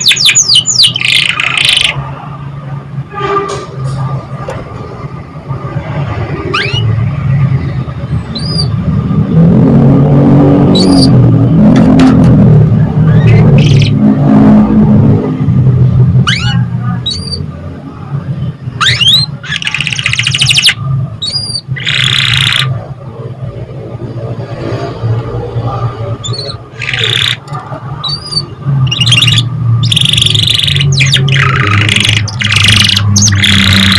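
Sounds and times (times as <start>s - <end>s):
buzzy bird trill: 0.0s - 2.0s, 6.5s - 7.0s, 8.3s - 8.8s, 10.7s - 11.2s, 13.0s - 14.0s, 16.2s - 17.5s, 18.8s - 22.7s, 26.2s - 33.9s
songbird chirps: 0.0s - 2.0s, 18.8s - 22.7s, 26.2s - 33.9s.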